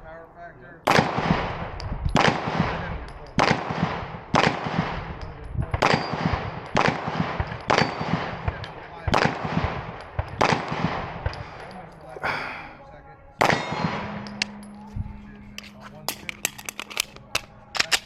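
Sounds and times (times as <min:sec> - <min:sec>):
pistol shots echoing: 0:00.8 - 0:11.7, 0:13.4 - 0:14.9.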